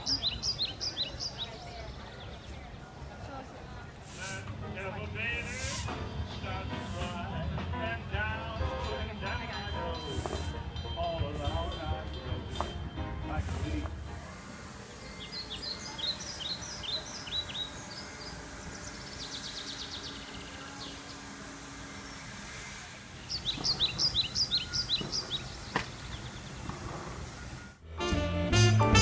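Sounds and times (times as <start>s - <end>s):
bird trill: 0.0s - 2.4s, 15.0s - 21.2s, 23.2s - 26.7s
songbird chirping: 0.0s - 3.3s, 14.7s - 22.4s, 23.1s - 27.6s
outdoor background noise: 0.0s - 29.0s.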